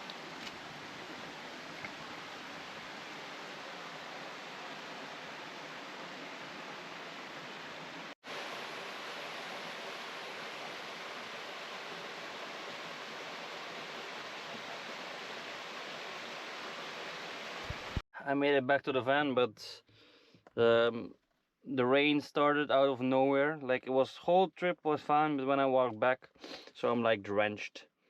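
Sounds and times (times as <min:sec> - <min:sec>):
heavy rain hissing: 0:00.0 - 0:18.0.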